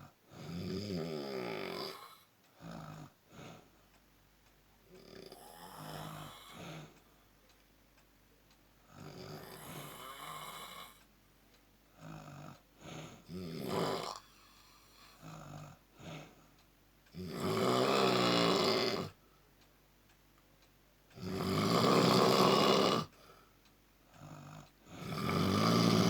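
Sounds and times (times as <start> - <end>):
person snoring: 0.0 - 3.7, 4.9 - 7.0, 8.9 - 11.0, 12.0 - 16.4, 17.1 - 19.2, 21.2 - 23.2, 24.2 - 26.0.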